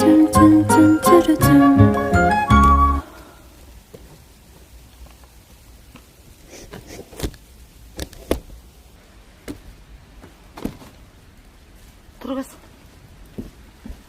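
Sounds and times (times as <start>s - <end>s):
low steady background noise: 0.0s - 14.0s.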